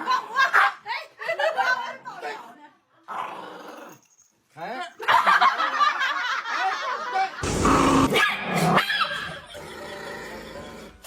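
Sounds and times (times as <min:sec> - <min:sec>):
dog barking and yipping: 0:08.1 - 0:09.3.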